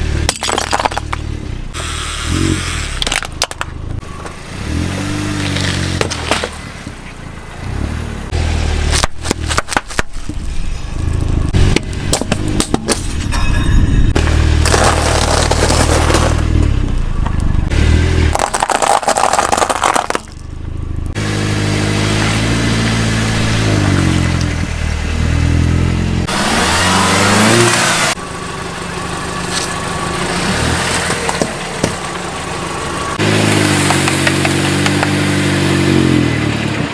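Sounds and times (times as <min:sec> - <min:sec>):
objects crunching under tyres: 0:00.0 - 0:28.2, 0:29.4 - 0:36.9
car engine revving: 0:01.1 - 0:09.6, 0:10.4 - 0:13.2, 0:14.1 - 0:36.9.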